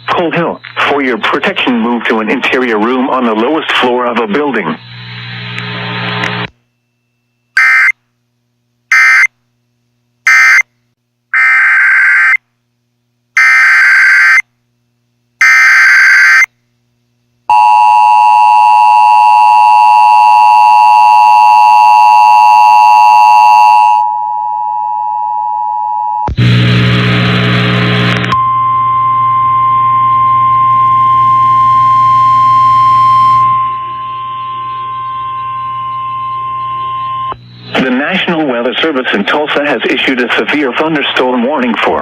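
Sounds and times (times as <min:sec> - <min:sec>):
radio noise: 0:00.0 - 0:06.5, 0:07.6 - 0:07.9, 0:30.1 - 0:42.0
screeching data bursts: 0:07.6 - 0:08.0, 0:11.4 - 0:12.4, 0:28.4 - 0:38.2.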